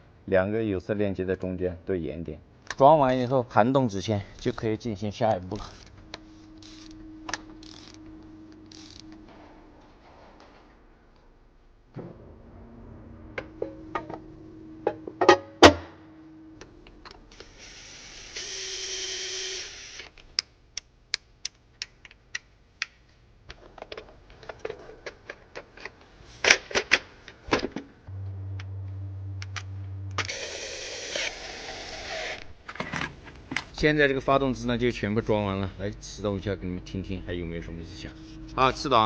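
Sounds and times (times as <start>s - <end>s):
steady hum: 3.9s - 18.8s, 28.1s - 39.0s.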